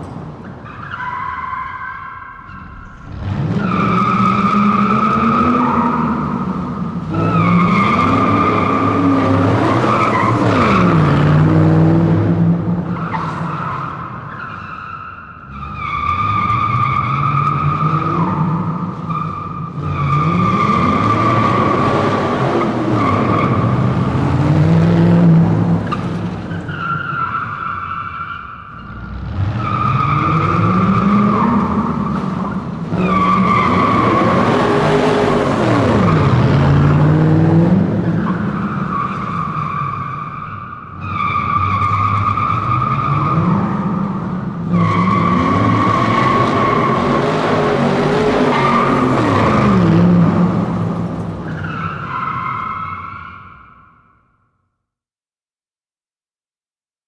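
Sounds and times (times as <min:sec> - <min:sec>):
car engine revving: 0:00.0 - 0:13.5, 0:28.8 - 0:39.6, 0:42.0 - 0:51.6
car tyres screeching: 0:00.0 - 0:54.1.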